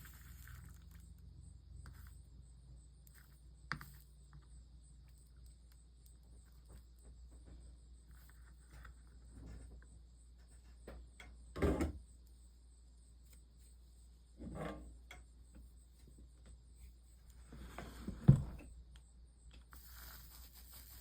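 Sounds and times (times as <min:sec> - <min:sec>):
objects clunking on a workbench: 0:10.6 - 0:12.0, 0:14.4 - 0:15.2, 0:17.5 - 0:18.7.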